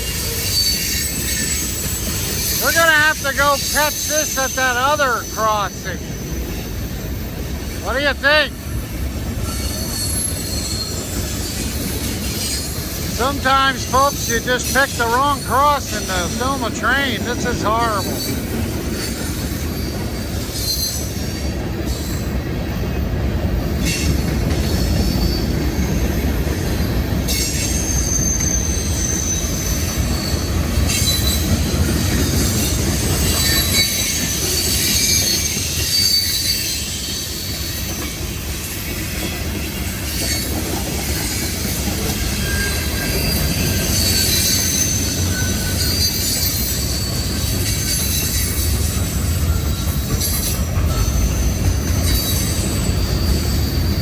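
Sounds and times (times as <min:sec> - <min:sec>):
high-pitched wheel squeal: 0:00.0 - 0:07.6, 0:09.4 - 0:16.4, 0:27.3 - 0:38.2, 0:39.8 - 0:54.0
freight train rumbling over rails: 0:00.0 - 0:54.0.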